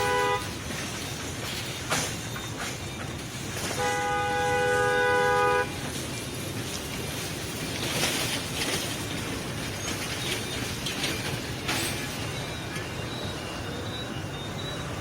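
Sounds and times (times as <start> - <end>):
train horn: 0.0 - 0.6, 3.7 - 5.8.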